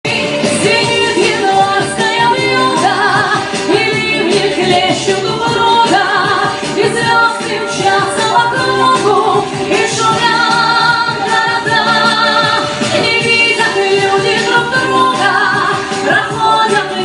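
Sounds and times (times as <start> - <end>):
song melody with strong vibrato: 0.0 - 17.0.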